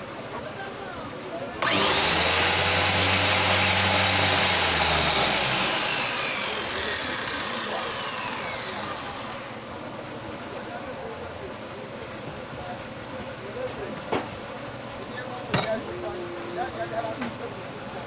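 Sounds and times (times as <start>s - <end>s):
circular saw whining: 1.6s - 9.9s.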